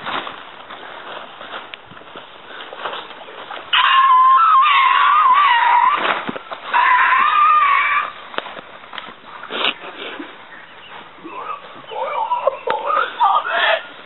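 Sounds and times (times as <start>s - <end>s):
high-pitched screams: 3.7s - 6.1s, 6.7s - 8.2s, 11.4s - 13.9s.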